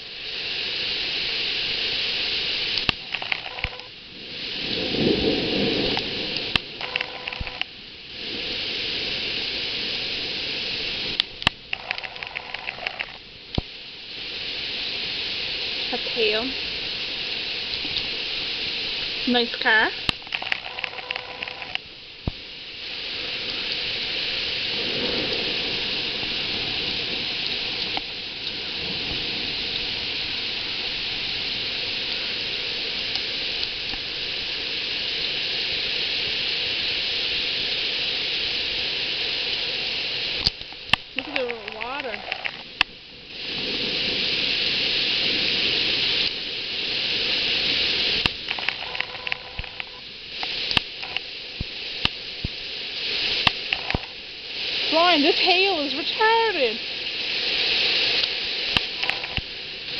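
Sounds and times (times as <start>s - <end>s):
hail falling hard: 0.0s - 59.9s.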